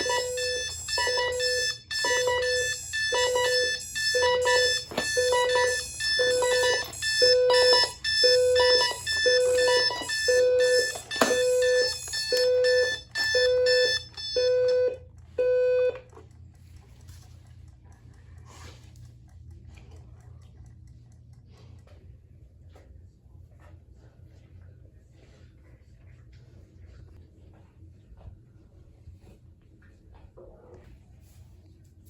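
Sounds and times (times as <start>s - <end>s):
alarm clock buzzy beeps: 0.0s - 16.0s.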